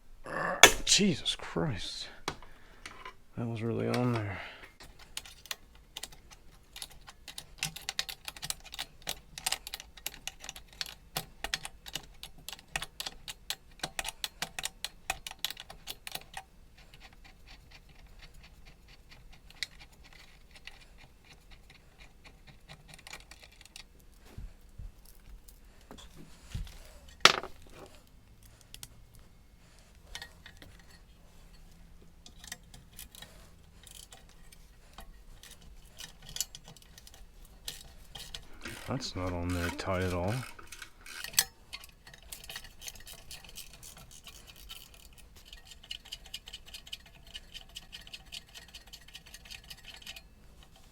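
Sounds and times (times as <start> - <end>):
sharp clack: 0.6 - 1.0
tool handling: 26.7 - 28.0.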